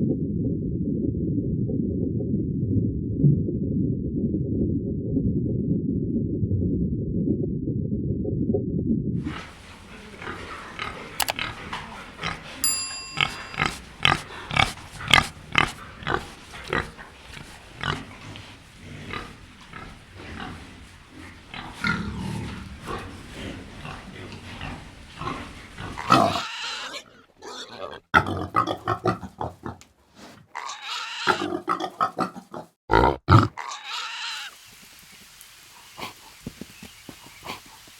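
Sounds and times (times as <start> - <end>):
low rumble: 0.0 - 9.4
brief ringing tone: 12.7 - 13.8
animal short abrupt calls: 21.6 - 28.0.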